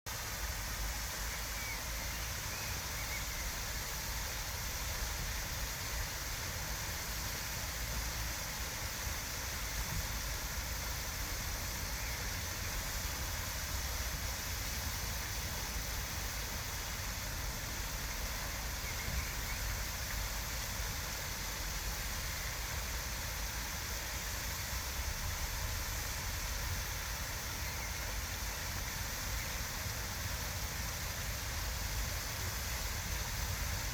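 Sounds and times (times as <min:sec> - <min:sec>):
faint bird chirps: 0:01.2 - 0:03.7, 0:11.8 - 0:12.8, 0:18.4 - 0:19.9.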